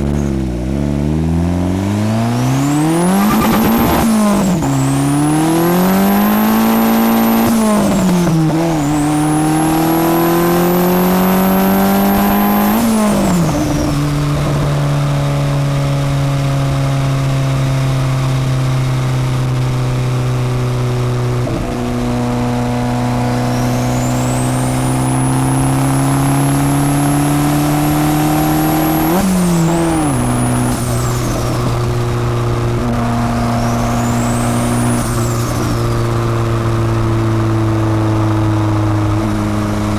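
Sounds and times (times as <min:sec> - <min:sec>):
car engine pulling hard: 0:00.0 - 0:39.9
high turbo whistle: 0:02.6 - 0:07.0, 0:33.2 - 0:36.0.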